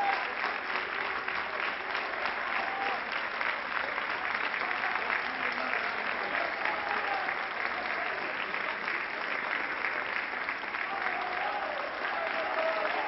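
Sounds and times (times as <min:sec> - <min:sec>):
crowd clapping steadily: 0:00.0 - 0:13.0
scattered shouts: 0:10.9 - 0:13.0.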